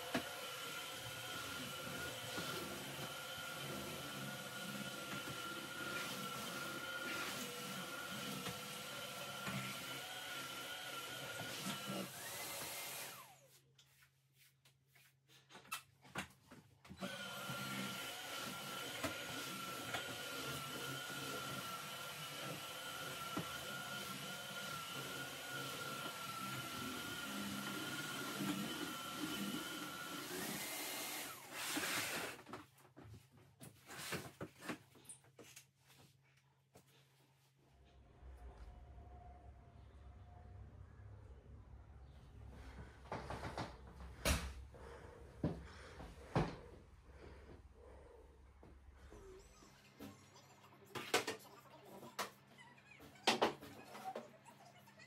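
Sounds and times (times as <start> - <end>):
vacuum cleaner running: 0.0 - 13.6, 16.9 - 32.6, 42.6 - 48.0.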